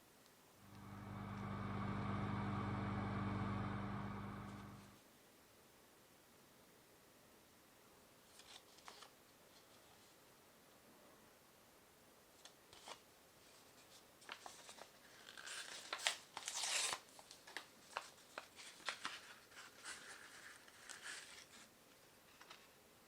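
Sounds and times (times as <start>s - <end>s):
wrapper crinkling and tearing: 14.4s - 21.4s.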